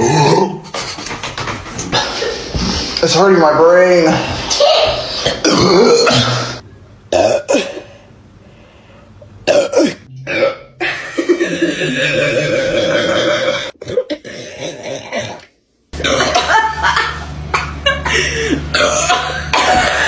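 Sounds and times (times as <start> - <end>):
woman belching: 5.3 - 6.5, 7.1 - 7.7, 9.5 - 16.6, 18.7 - 20.0
woman coughing: 7.2 - 7.8, 9.5 - 10.7, 16.0 - 16.8, 18.5 - 20.0.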